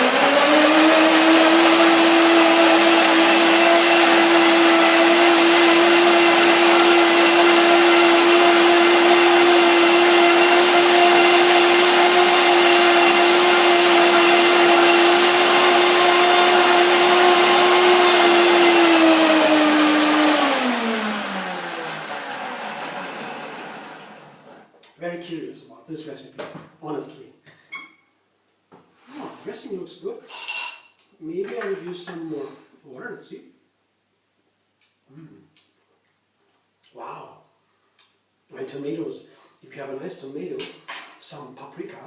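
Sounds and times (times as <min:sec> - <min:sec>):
blender running: 0:00.0 - 0:24.6.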